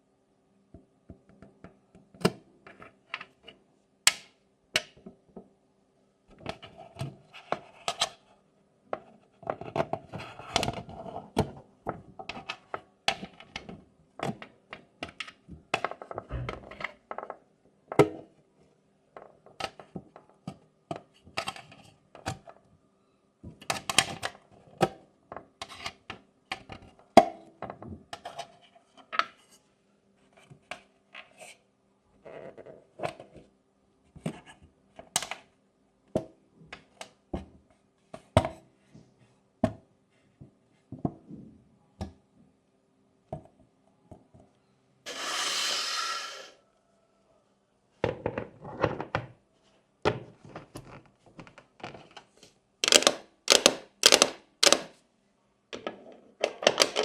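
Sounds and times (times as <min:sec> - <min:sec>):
toy pieces clicking and knocking: 0:52.8 - 0:54.9.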